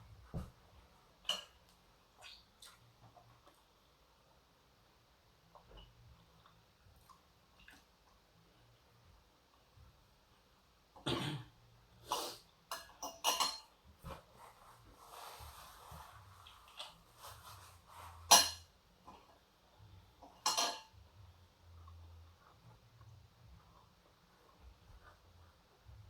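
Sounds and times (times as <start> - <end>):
person coughing: 11.1 - 11.5.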